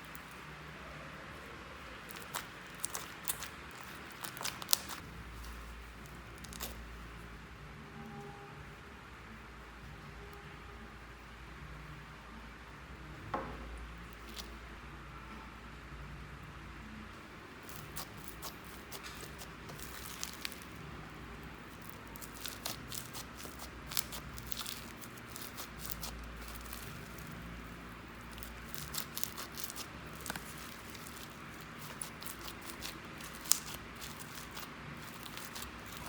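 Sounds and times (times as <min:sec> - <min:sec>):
slime squishing with sticky pops: 0:01.8 - 0:07.0, 0:17.6 - 0:36.0.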